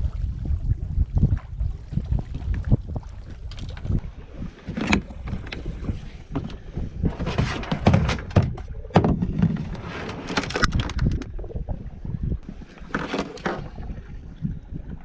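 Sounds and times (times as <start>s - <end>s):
wind rumbling on microphone: 0.0s - 15.0s
knocks and clunks on a kayak: 0.1s - 15.0s.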